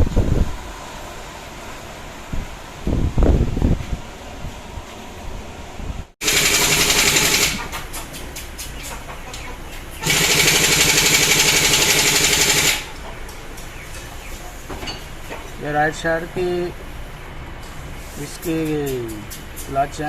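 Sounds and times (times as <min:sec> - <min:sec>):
impact wrench hammering: 0:06.2 - 0:07.9, 0:10.0 - 0:13.0.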